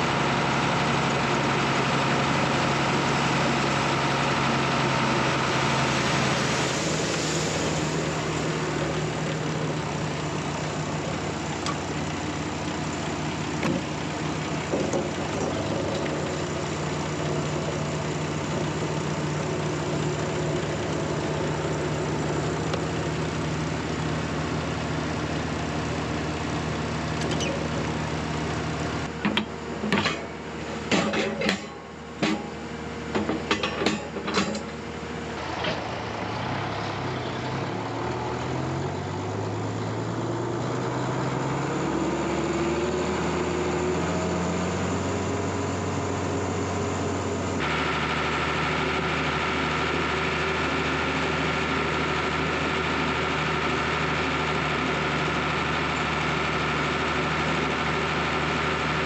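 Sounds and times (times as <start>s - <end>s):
diesel engine running: 0.0s - 59.0s
sharp clicks and knocks: 29.2s - 30.3s, 30.9s - 34.8s.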